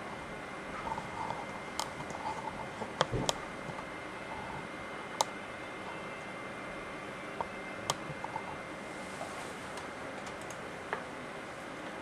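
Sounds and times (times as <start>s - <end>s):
computer fan hiss: 0.0s - 12.0s
computer mouse clicking: 1.2s - 3.8s, 7.9s - 8.6s, 9.8s - 10.6s.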